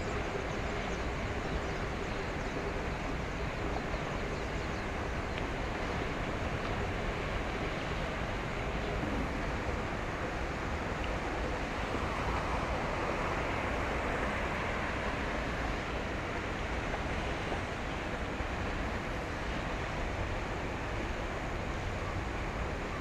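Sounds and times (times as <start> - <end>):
water rushing: 0.0 - 23.0.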